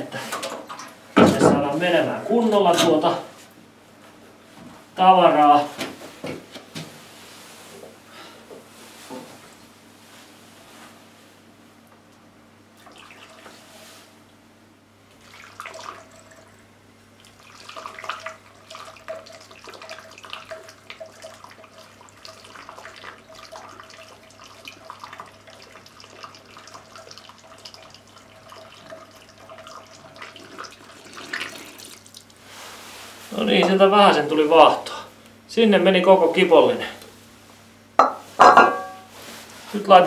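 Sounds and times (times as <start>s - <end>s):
water trickling and gurgling through hose: 15.1s - 32.4s.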